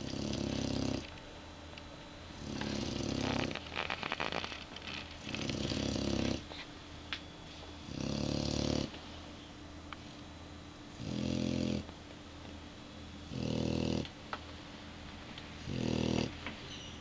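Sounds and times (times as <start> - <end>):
dog snoring: 0.0 - 1.1, 2.4 - 6.6, 7.8 - 9.0, 10.9 - 11.9, 13.2 - 14.1, 15.6 - 16.4.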